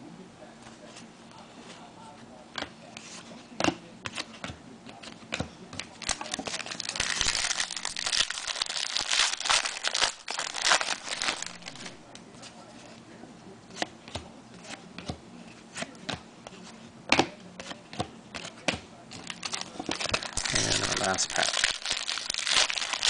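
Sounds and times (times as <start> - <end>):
card pack wrapper crinkling and tearing: 6.0 - 12.0, 19.2 - 23.0.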